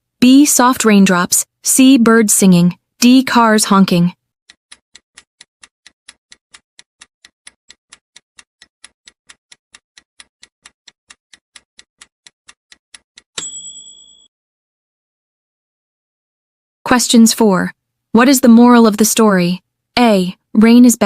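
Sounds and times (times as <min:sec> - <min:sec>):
clock ticking: 0:02.4 - 0:13.8
bell ding: 0:13.4 - 0:14.3.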